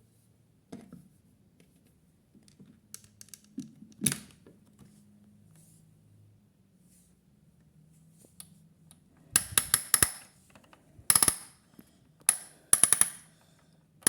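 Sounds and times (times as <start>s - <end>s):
toy clicking and knocking: 9.4s - 10.3s, 12.2s - 13.3s.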